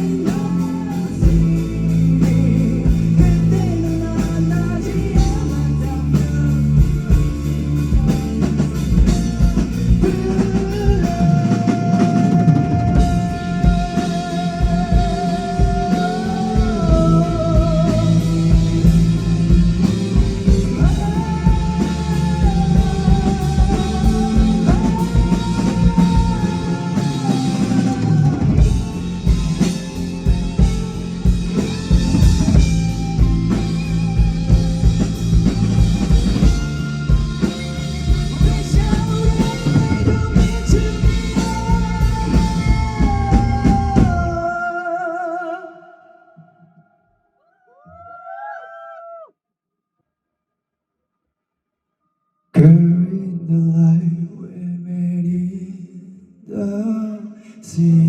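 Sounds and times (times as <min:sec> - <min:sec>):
live rock band playing: 0:00.0 - 0:44.4
held melody line with vibrato: 0:00.0 - 0:44.5.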